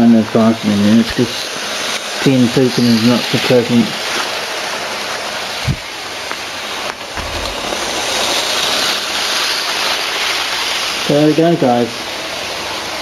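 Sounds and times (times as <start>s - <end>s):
model train wheels rattling on rails: 0.0s - 5.6s, 7.2s - 11.9s
low thump: 7.1s - 8.6s.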